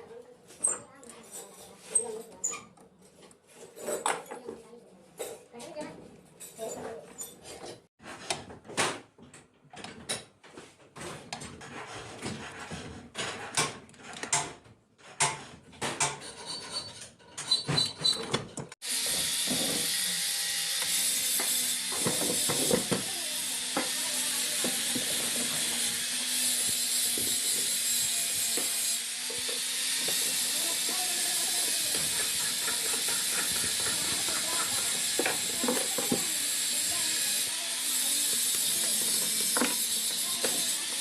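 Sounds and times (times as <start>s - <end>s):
scraping rubbing and knocking: 10.6s - 14.3s, 26.5s - 37.2s.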